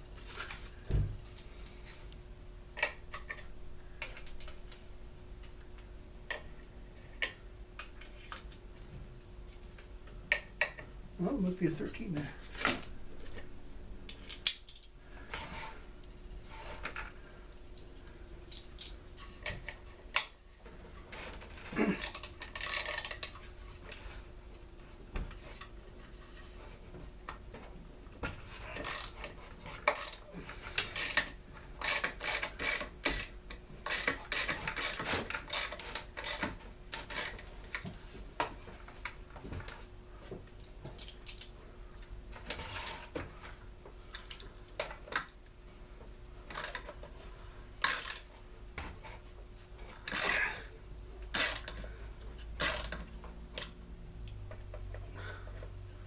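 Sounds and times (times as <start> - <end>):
faint steady hum: 0.0 - 56.0
hand tools clicking on metal parts: 21.8 - 23.4, 28.6 - 37.8, 47.8 - 48.3, 50.0 - 50.5, 51.3 - 53.8.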